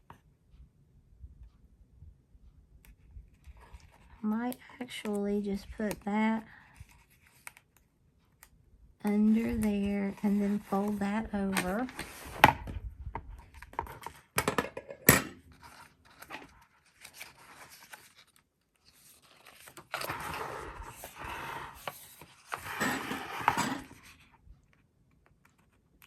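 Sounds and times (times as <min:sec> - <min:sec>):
scratchy paper noise: 0:15.6 - 0:24.2.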